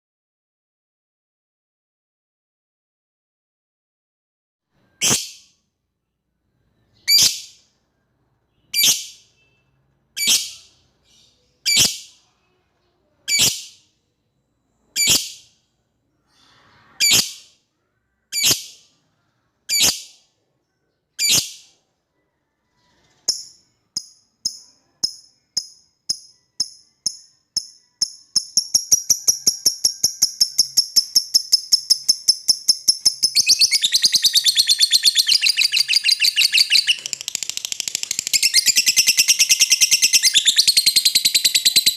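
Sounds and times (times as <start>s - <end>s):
lovebird chattering trill: 23.3s - 41.9s
lovebird calling: 28.5s - 41.9s.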